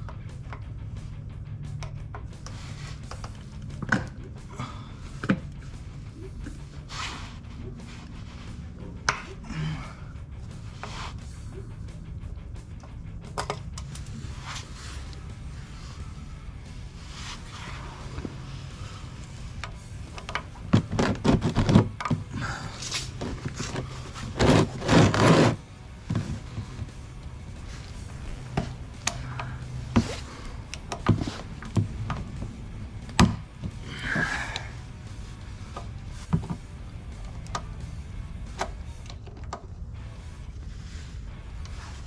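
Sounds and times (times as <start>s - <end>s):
faint background music: 0.0s - 42.0s.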